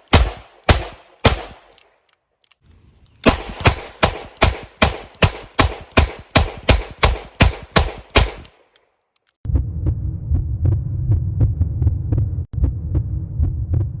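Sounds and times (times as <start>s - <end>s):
rapid sharp shots: 0.0s - 1.8s, 3.2s - 8.6s
low throbbing hum: 9.5s - 14.0s.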